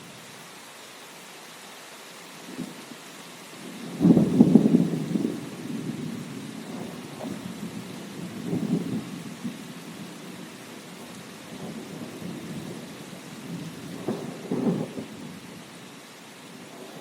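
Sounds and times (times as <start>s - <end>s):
steady rain: 0.0s - 17.0s
rolling thunder: 3.8s - 15.4s.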